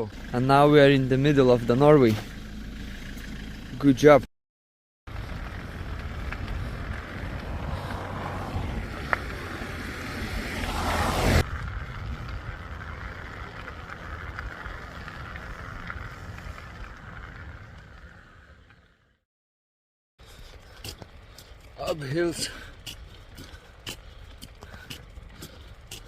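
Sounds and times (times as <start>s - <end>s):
road traffic: 0.0s - 4.3s, 5.1s - 19.2s, 20.2s - 26.0s
wind rushing: 5.3s - 12.7s.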